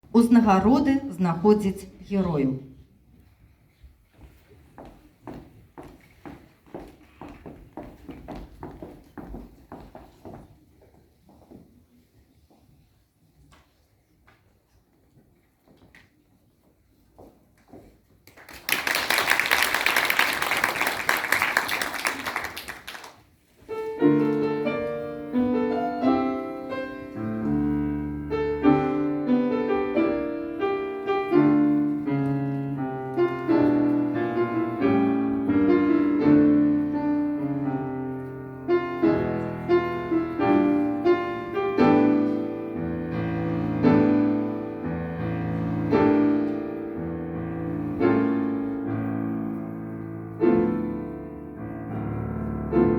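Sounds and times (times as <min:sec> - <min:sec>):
piano playing chords and melody: 0:23.7 - 0:52.9.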